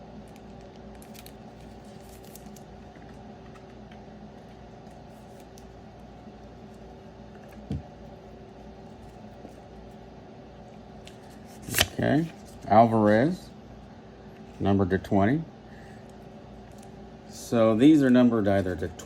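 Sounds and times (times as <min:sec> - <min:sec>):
steady low hum: 0:00.0 - 0:19.0
trading cards clicking and rustling: 0:11.1 - 0:12.7.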